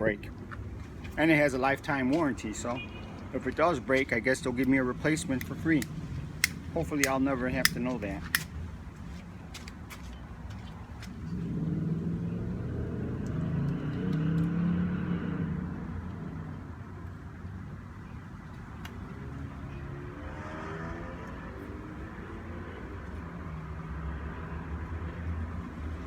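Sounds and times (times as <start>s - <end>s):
vehicle approaching: 10.7s - 17.2s, 19.0s - 26.0s
vehicle engine passing by: 11.1s - 16.7s, 19.1s - 26.0s.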